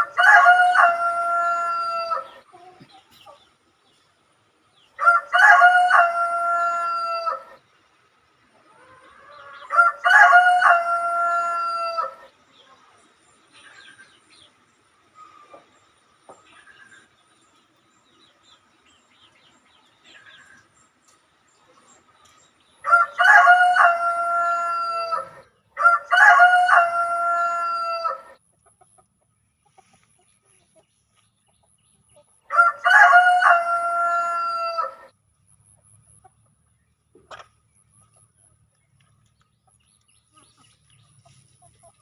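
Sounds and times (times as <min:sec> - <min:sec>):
rooster crowing: 0:00.0 - 0:02.4, 0:05.0 - 0:07.6, 0:08.8 - 0:12.3, 0:22.8 - 0:28.4, 0:32.5 - 0:35.1.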